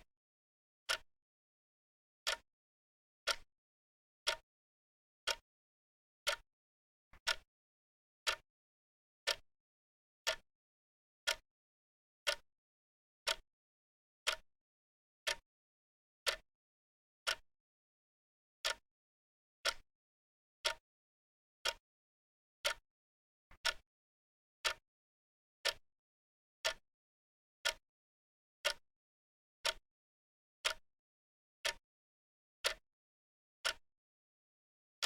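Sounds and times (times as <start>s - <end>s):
clock ticking: 2.2s - 2.5s, 3.2s - 3.5s, 4.2s - 4.4s, 7.2s - 7.5s, 9.2s - 9.4s, 13.2s - 13.4s, 18.6s - 18.8s, 20.6s - 20.8s, 22.6s - 22.8s, 23.5s - 23.8s, 29.6s - 29.8s, 30.6s - 30.8s, 31.6s - 31.8s, 32.6s - 32.8s, 33.6s - 33.8s.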